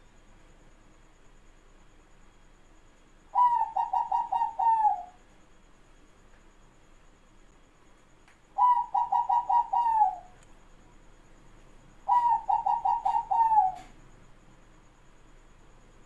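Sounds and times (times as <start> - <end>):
dove cooing: 3.4 - 5.2, 8.6 - 10.4, 12.0 - 14.0.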